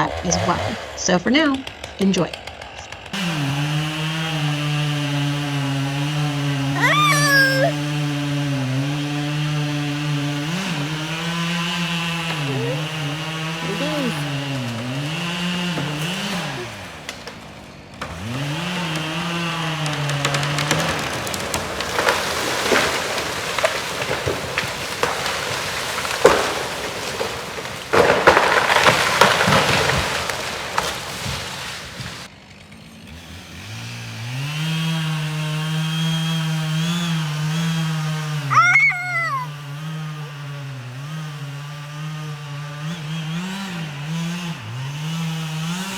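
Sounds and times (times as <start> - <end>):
chainsaw running and revving: 0.0 - 45.9
wood cracking: 1.7 - 32.3.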